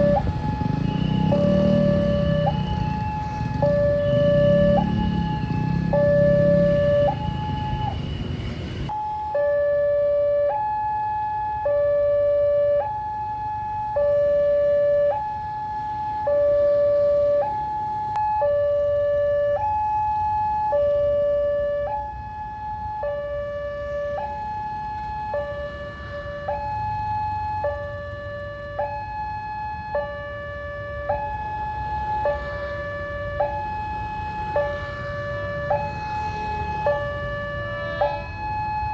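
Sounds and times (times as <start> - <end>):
two-tone level crossing alarm: 0.0 - 13.0.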